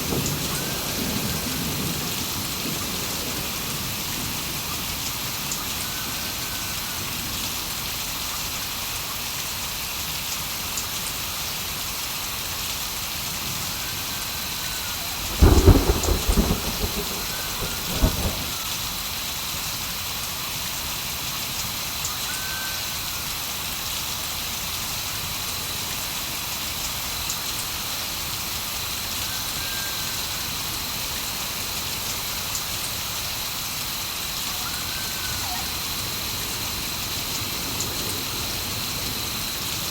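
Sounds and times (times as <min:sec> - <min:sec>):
thunder rumbling: 0:00.0 - 0:07.4, 0:13.4 - 0:19.0
heavy rain falling: 0:00.0 - 0:39.9.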